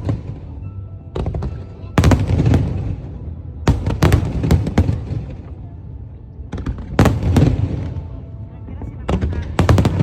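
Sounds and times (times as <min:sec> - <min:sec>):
fireworks exploding: 0:01.2 - 0:05.6, 0:06.5 - 0:08.1, 0:09.1 - 0:10.0.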